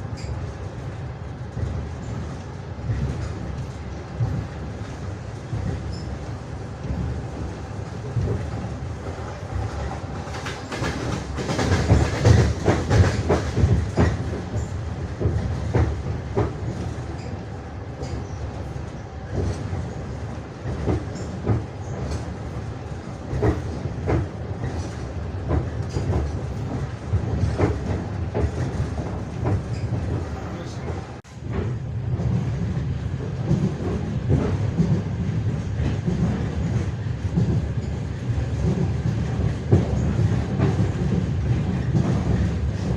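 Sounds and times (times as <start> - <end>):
low rumble of train carriage: 0.0 - 42.9
train wheels clattering over rail joints: 1.5 - 42.9.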